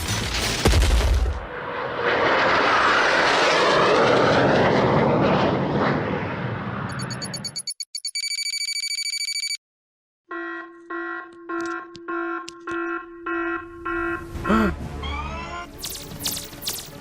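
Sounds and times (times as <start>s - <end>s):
high electronic beeps: 6.9s - 9.6s
pitched alarm beeps: 6.9s - 9.6s, 10.3s - 14.2s
steady high tone: 10.3s - 14.6s.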